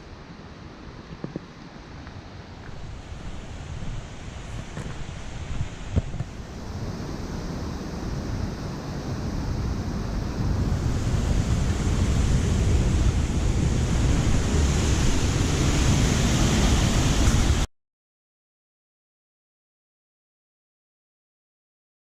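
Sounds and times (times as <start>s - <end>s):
mountain stream rushing: 0.0s - 17.7s
wind buffeting microphone: 1.0s - 17.7s.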